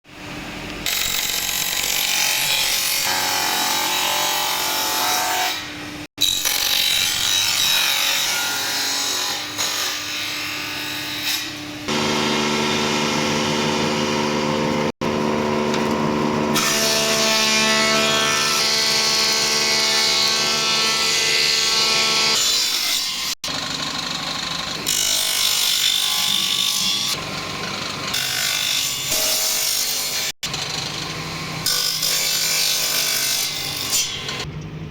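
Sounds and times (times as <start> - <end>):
power tools cutting and sanding wood: 0.8 - 34.5
tool motor whining: 11.9 - 16.6.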